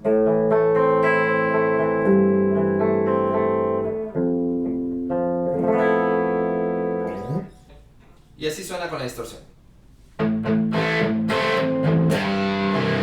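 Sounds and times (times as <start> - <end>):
clean electric guitar chords: 0.0 - 7.6, 10.2 - 13.0.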